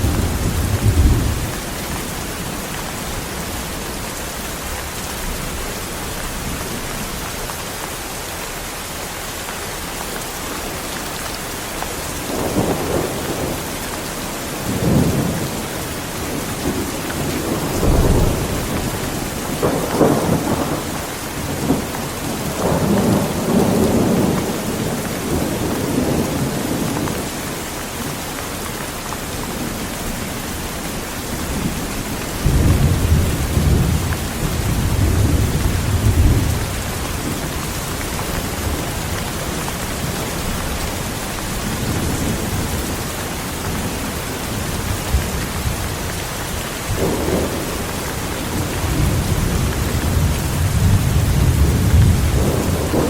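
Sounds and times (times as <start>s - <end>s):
thunder rumbling: 0.0s - 4.0s, 12.2s - 15.6s, 16.2s - 27.0s, 30.6s - 53.0s
heavy rain pouring: 0.0s - 53.0s.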